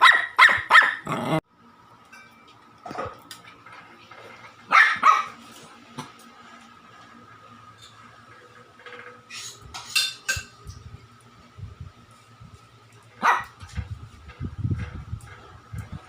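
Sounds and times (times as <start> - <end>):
small dog barking: 0.0 - 1.4, 4.7 - 5.4, 13.2 - 13.6.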